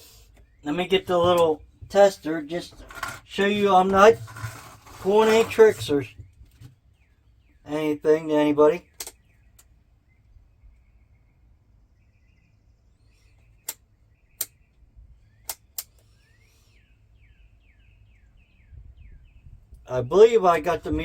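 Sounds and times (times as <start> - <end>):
faint bird chirps and trills: 6.0 - 20.4.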